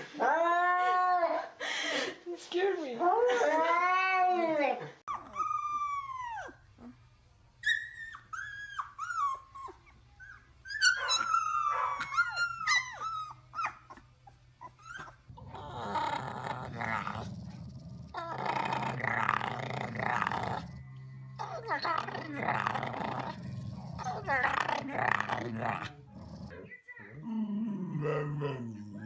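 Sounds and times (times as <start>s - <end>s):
dog whining: 5.1s - 7.0s, 7.6s - 26.6s
dog growling: 14.8s - 29.0s.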